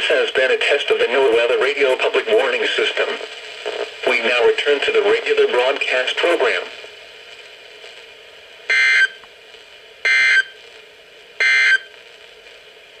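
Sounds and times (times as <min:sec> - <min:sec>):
steady radio hiss: 0:00.0 - 0:13.0
digital data tone bursts: 0:10.1 - 0:10.6, 0:11.4 - 0:11.9.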